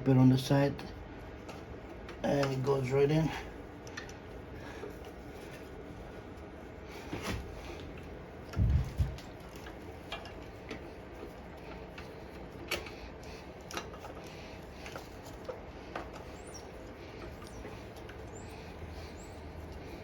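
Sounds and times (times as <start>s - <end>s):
dull low thump: 8.6s - 9.2s.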